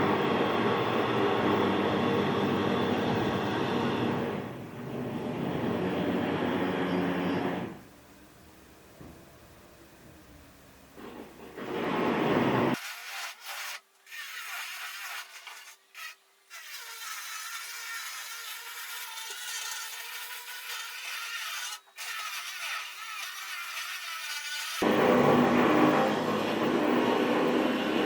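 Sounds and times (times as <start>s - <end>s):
rasping sawing-like scrape: 12.7s - 26.1s.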